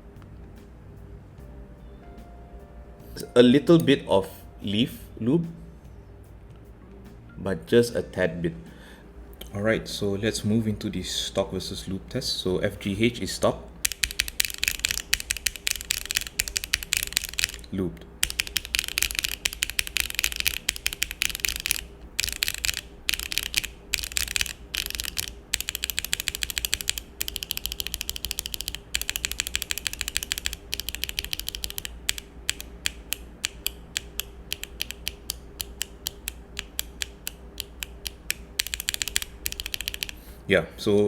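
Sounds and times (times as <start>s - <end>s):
mechanical keyboard typing: 13.8s - 40.2s.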